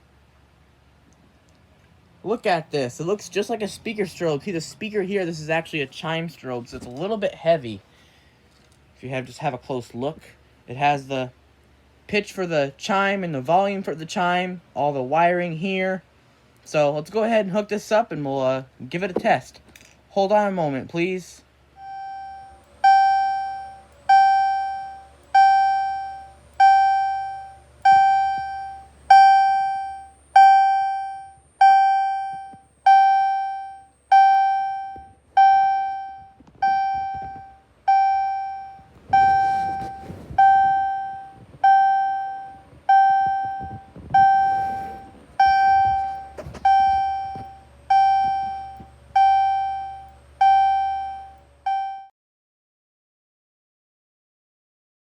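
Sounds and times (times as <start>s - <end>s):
fire alarm chime: 21.8s - 52.1s.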